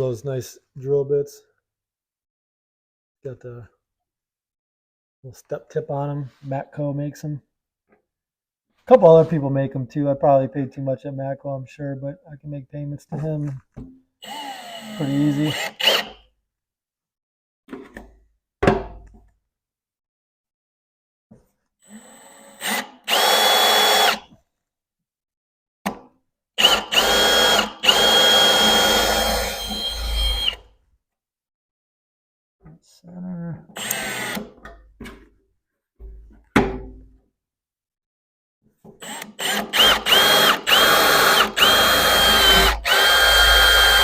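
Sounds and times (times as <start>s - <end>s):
power drill boring metal: 14.2s - 16.2s, 21.9s - 24.3s, 26.6s - 30.6s, 33.8s - 34.5s, 39.0s - 44.0s.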